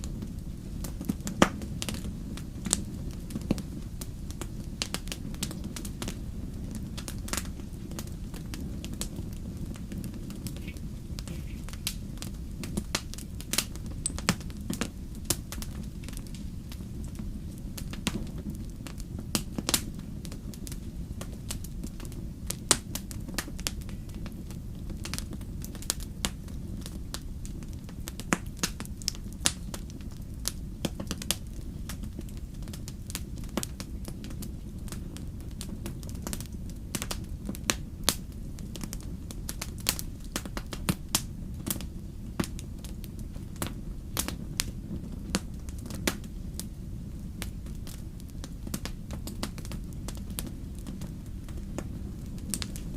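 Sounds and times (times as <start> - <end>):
wood fire crackling: 0.0 - 52.9.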